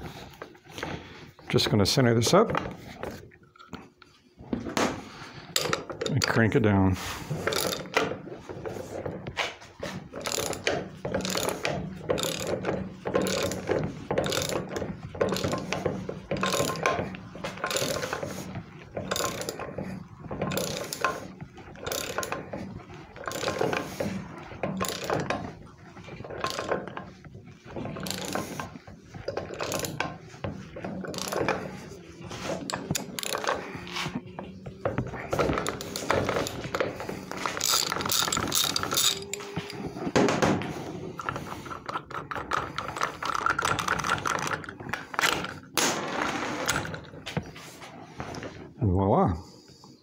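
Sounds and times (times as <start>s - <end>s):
ratchet clicking: 7.4s - 8.1s, 10.2s - 24.1s, 24.7s - 25.4s, 26.4s - 27.0s, 28.0s - 28.7s, 31.0s - 31.6s, 35.3s - 39.4s.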